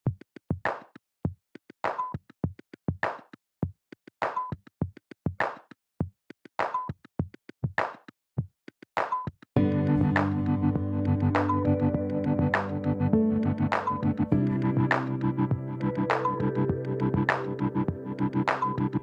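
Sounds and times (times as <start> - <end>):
electronic drum machine beat: 9.6 - 19.0.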